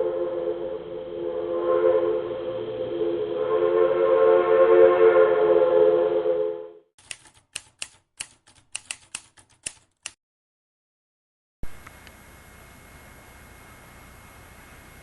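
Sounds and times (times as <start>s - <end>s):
locomotive air horn: 0.0s - 6.8s
sharp irregular clicks: 7.0s - 10.2s.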